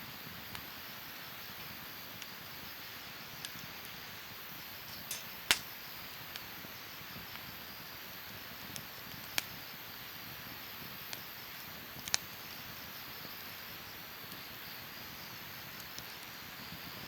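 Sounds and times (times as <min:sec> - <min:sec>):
wood fire crackling: 0:04.7 - 0:05.8
fire popping: 0:04.9 - 0:05.8.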